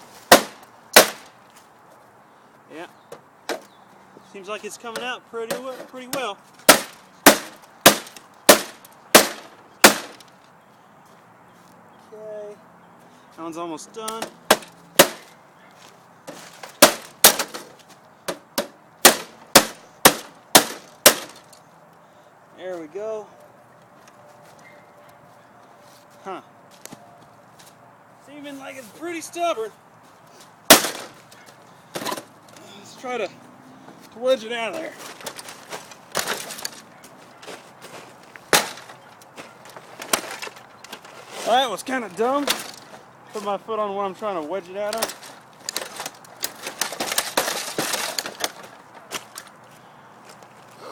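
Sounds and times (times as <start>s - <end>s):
sharp knocks and cracks: 0.3s - 1.4s, 4.9s - 10.3s, 14.0s - 15.4s, 16.2s - 21.6s, 30.7s - 32.3s, 35.0s - 36.9s, 38.4s - 41.1s, 42.4s - 42.9s, 44.8s - 49.6s.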